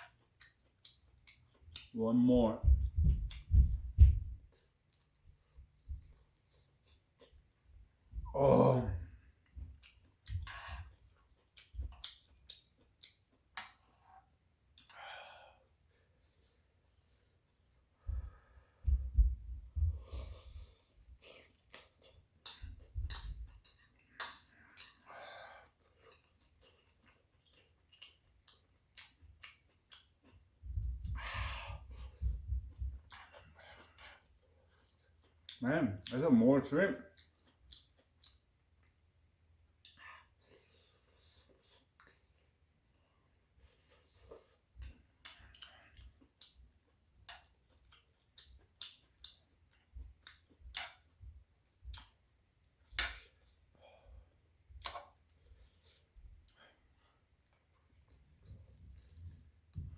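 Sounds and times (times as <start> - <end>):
close-up chewing: 0.0 - 2.0, 2.7 - 7.7, 9.2 - 15.0, 19.8 - 36.2, 37.1 - 39.0, 39.8 - 53.6
dull low thump: 2.6 - 4.4, 18.1 - 20.0
low thumps: 2.6 - 4.4
breathing: 14.9 - 16.6, 18.0 - 19.1, 19.8 - 21.1, 24.7 - 25.8, 31.1 - 32.4, 53.7 - 54.3.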